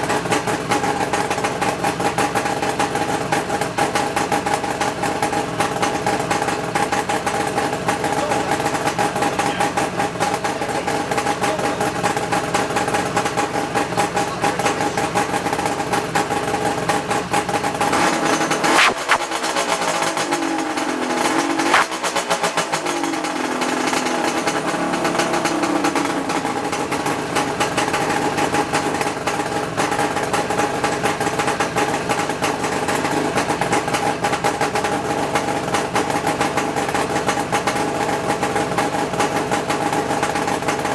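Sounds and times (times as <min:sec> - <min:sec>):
two-stroke engine idling: 0:00.0 - 0:40.9
sharp engine cracks: 0:17.8 - 0:22.9.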